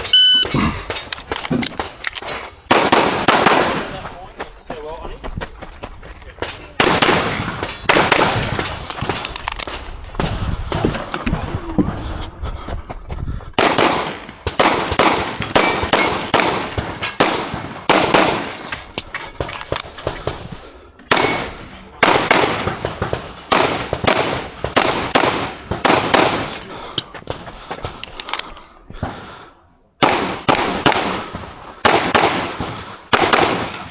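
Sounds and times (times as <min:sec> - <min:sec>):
pistol shots echoing: 0:02.7 - 0:04.0, 0:06.8 - 0:09.8, 0:13.6 - 0:19.8, 0:21.1 - 0:27.1, 0:30.0 - 0:33.9.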